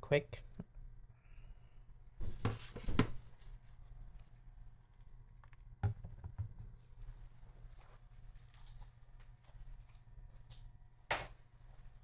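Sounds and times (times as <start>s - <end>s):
objects rustling and clattering: 6.1s - 12.0s.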